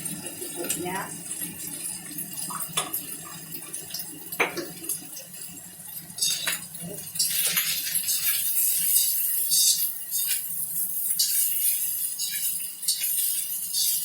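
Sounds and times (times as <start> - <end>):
metal spatula scraping a frying pan: 6.2 - 6.6, 7.2 - 14.0.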